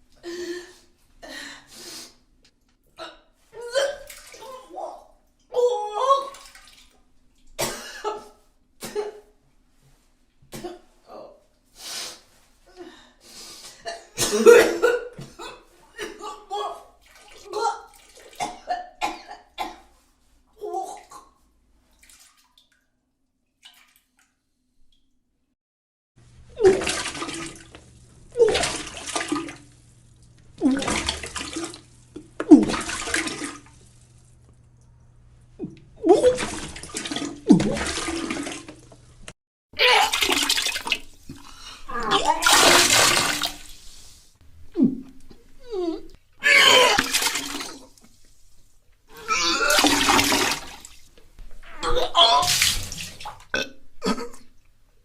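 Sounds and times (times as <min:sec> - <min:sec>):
liquid splashing: 0:04.0 - 0:04.8, 0:17.0 - 0:18.5, 0:21.9 - 0:22.8, 0:26.5 - 0:34.8, 0:36.1 - 0:39.2, 0:40.0 - 0:44.1, 0:46.8 - 0:53.5
person retching and vomiting: 0:13.8 - 0:16.2, 0:35.6 - 0:38.2, 0:39.8 - 0:43.6, 0:44.8 - 0:48.0, 0:49.1 - 0:50.7, 0:51.6 - 0:54.6
person retching: 0:49.1 - 0:50.2, 0:51.6 - 0:54.6.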